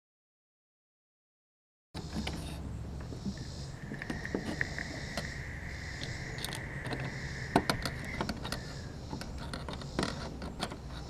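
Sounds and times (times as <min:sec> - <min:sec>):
steady high-pitched whine: 0:02.0 - 0:11.0
tools clicking and knocking: 0:06.4 - 0:11.0.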